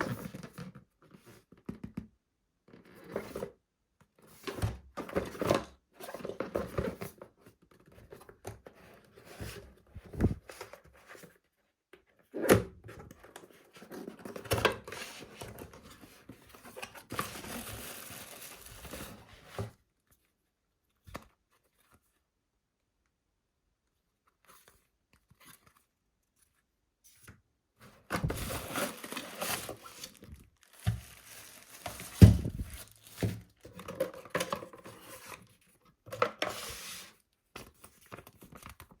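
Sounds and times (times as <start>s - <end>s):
packaging tearing and crinkling: 17.2s - 19.1s, 28.3s - 33.6s.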